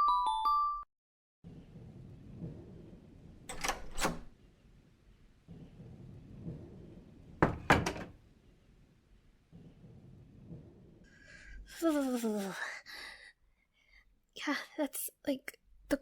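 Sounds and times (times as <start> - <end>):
door clicking and knocking: 3.5 - 4.3, 7.4 - 8.2.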